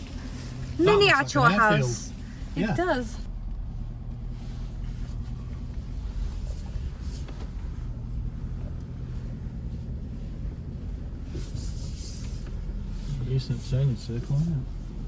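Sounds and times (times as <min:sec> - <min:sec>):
car engine and tyres droning: 0:00.0 - 0:15.0
hissy rustles: 0:04.2 - 0:15.0.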